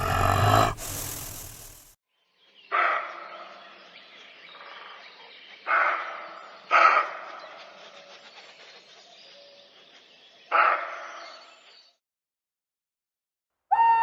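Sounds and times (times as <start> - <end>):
wild animal calling: 0.0 - 1.4.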